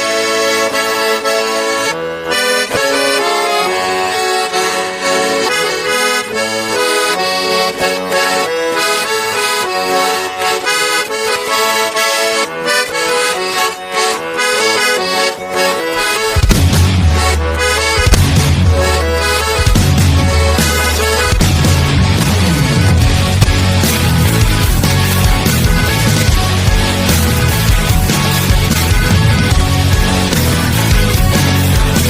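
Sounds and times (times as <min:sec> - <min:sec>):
accordion playing folk tune: 0:00.0 - 0:32.0.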